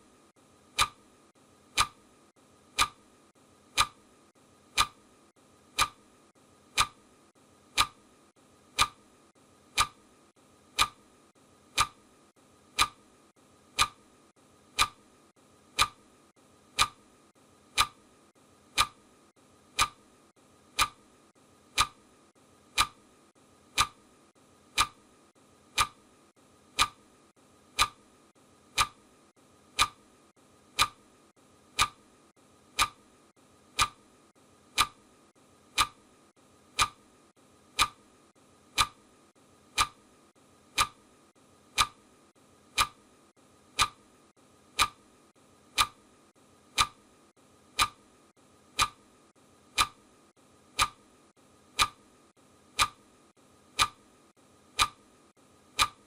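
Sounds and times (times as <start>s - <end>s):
clock ticking: 0.7s - 1.1s, 1.7s - 2.0s, 2.7s - 3.1s, 3.7s - 4.1s, 4.7s - 5.1s, 5.7s - 6.1s, 6.7s - 7.1s, 7.7s - 8.0s, 8.7s - 9.1s, 9.7s - 10.0s, 10.7s - 11.1s, 11.7s - 12.1s, 12.7s - 13.1s, 13.7s - 14.1s, 14.7s - 15.1s, 15.7s - 16.1s, 16.7s - 17.1s, 17.7s - 18.1s, 18.7s - 19.0s, 19.7s - 20.1s, 20.7s - 21.1s, 21.7s - 22.1s, 22.7s - 23.1s, 23.7s - 24.1s, 24.7s - 25.1s, 25.7s - 26.1s, 26.7s - 27.1s, 27.7s - 28.1s, 28.7s - 29.1s, 29.7s - 30.0s, 30.7s - 31.1s, 31.7s - 32.0s, 32.7s - 33.1s, 33.7s - 34.1s, 34.7s - 35.1s, 35.7s - 36.1s, 36.7s - 37.1s, 37.7s - 38.1s, 38.7s - 39.1s, 39.7s - 40.1s, 40.7s - 41.1s, 41.7s - 42.1s, 42.7s - 43.1s, 43.7s - 44.1s, 44.7s - 45.1s, 45.7s - 46.1s, 46.7s - 47.1s, 47.7s - 48.1s, 48.7s - 50.0s, 50.7s - 51.1s, 51.7s - 52.1s, 52.7s - 53.0s, 53.7s - 54.0s, 54.7s - 55.1s, 55.7s - 56.0s.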